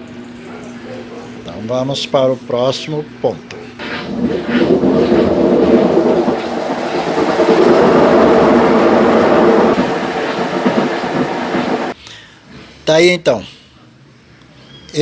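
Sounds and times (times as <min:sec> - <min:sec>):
washing machine spinning and rattling: 0:00.0 - 0:02.8, 0:03.7 - 0:12.0.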